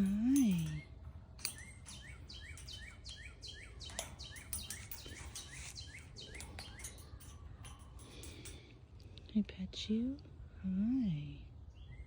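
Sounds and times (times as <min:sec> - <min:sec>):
bird chirping: 0:00.0 - 0:08.6.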